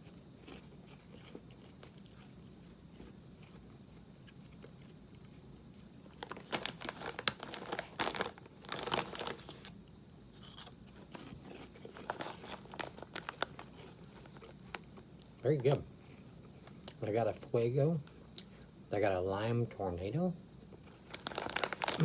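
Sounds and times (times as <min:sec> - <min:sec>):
crunchy snacks being chewed: 0:00.0 - 0:09.8, 0:10.4 - 0:17.0, 0:20.7 - 0:22.0
snack bag crinkling: 0:04.4 - 0:09.8, 0:10.4 - 0:15.9, 0:20.7 - 0:22.0.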